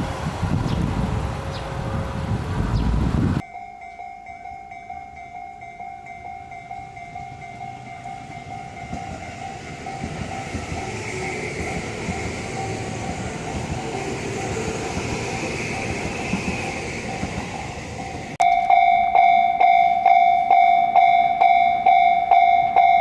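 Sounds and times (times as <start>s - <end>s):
train wheels rumbling: 0.0s - 3.4s, 6.0s - 18.4s
level crossing bell ringing: 3.4s - 10.5s, 18.4s - 23.0s.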